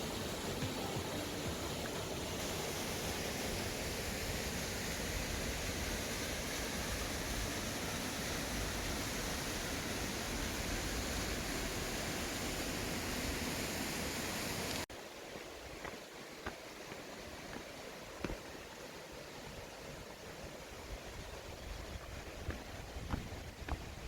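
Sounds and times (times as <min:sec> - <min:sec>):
stream rushing over rocks: 0:00.0 - 0:24.0.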